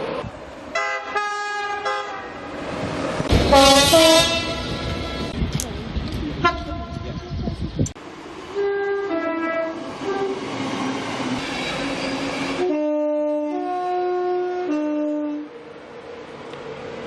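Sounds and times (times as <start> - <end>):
rushing train noise: 0.0 - 17.0
train two-tone horn: 0.8 - 2.4, 3.3 - 5.3, 6.4 - 7.2, 8.5 - 10.6, 12.1 - 15.6.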